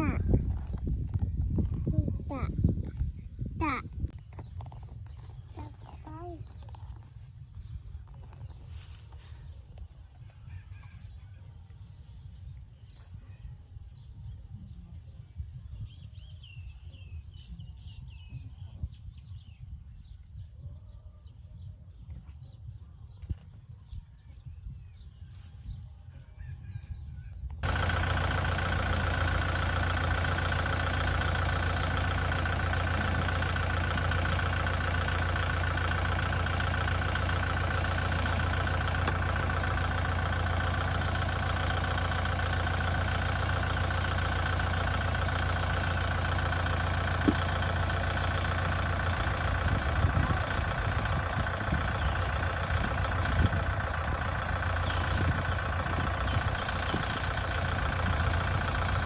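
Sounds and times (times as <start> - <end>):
engine idling: 0.0 - 20.4, 27.5 - 59.0.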